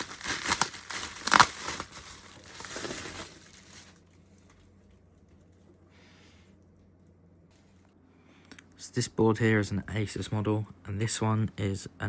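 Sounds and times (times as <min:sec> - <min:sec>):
plastic packaging crinkling: 0:00.0 - 0:05.6.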